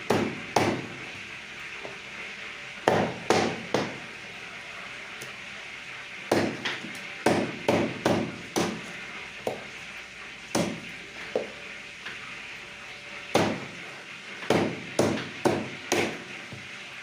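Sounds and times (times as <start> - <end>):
cleaver chopping chicken: 0.0 - 1.0, 2.8 - 4.0, 6.3 - 9.6, 10.5 - 11.5, 13.3 - 13.8, 14.4 - 16.2.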